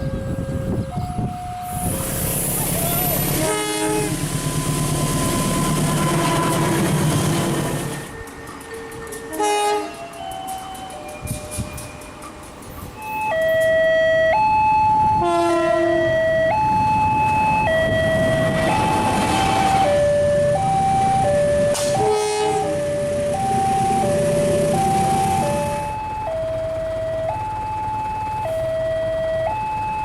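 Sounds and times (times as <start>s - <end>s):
train rumble: 0.0s - 30.0s
locomotive horn two pitches: 3.2s - 4.2s, 9.3s - 10.0s, 15.1s - 16.3s, 21.7s - 22.8s.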